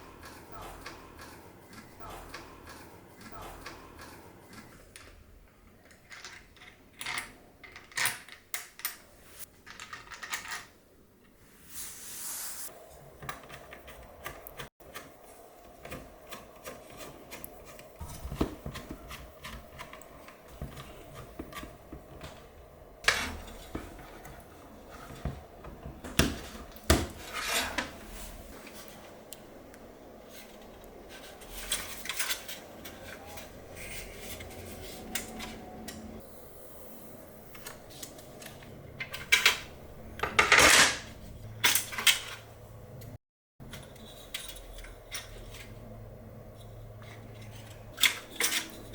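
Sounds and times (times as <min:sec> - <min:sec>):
computer parts being handled: 0:13.0 - 0:29.3, 0:30.2 - 0:36.2.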